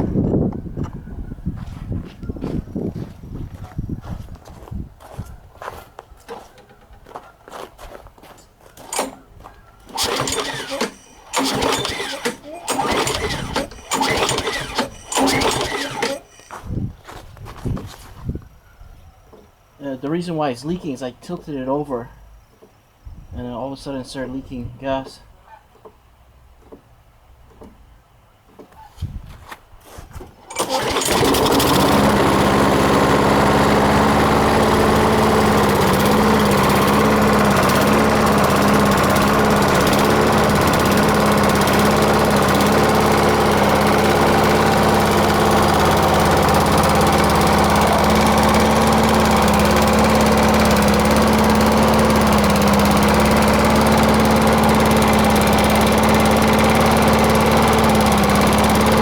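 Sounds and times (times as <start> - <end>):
lawnmower engine running: 8.8 - 17.2, 30.4 - 59.0
faint rattles: 8.9 - 16.8.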